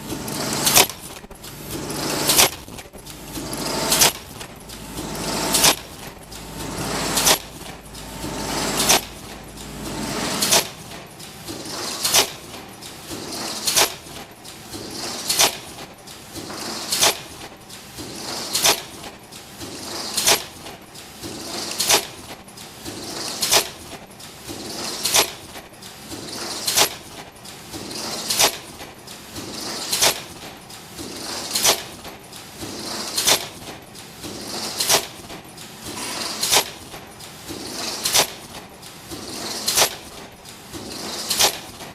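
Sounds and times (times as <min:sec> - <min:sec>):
machine mechanical running: 0:00.0 - 0:13.8, 0:35.9 - 0:36.9
welding machine clacking: 0:00.0 - 0:17.5, 0:29.4 - 0:41.9
low hum: 0:03.0 - 0:10.8.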